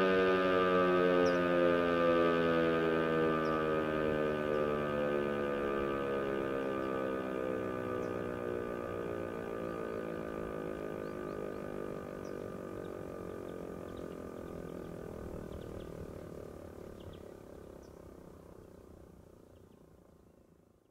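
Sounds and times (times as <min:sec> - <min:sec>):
motor siren winding down: 0:00.0 - 0:17.5
faint bird chirps: 0:11.0 - 0:18.8.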